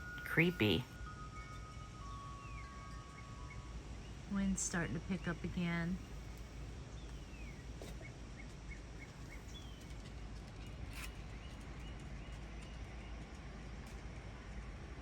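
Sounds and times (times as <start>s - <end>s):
bird chirping: 0.0s - 6.2s, 8.4s - 10.0s.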